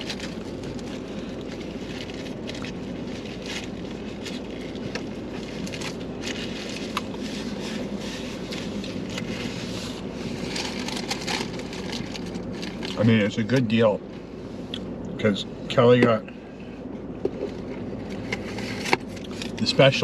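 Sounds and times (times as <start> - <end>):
food wrappers crackling: 0.0 - 13.2
steady low rumble: 0.0 - 20.0.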